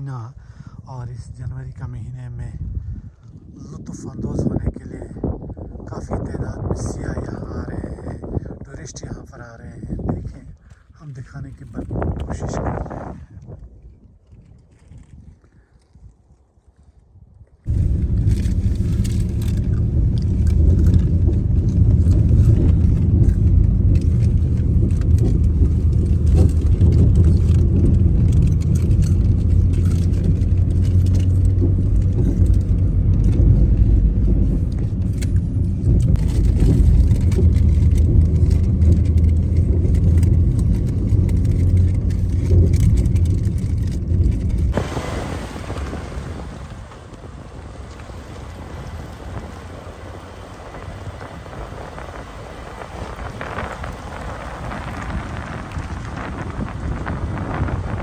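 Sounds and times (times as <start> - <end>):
motor vehicle rumbling: 17.6 - 58.0
small clicks and rattles: 17.7 - 44.8, 47.8 - 58.0.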